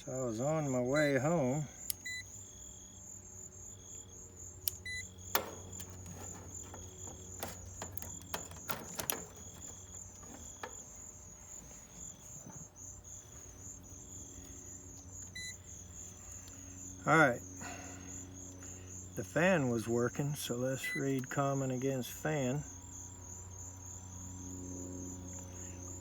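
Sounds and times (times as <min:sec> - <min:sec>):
low steady hum: 0:00.0 - 0:22.8
crickets chirping: 0:00.0 - 0:26.0
tools clicking and tapping: 0:04.7 - 0:10.9.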